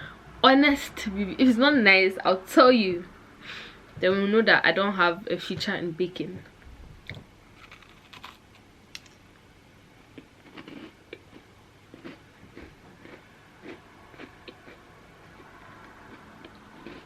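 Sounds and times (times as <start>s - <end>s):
person chewing cookie: 7.6s - 9.1s, 10.1s - 17.0s.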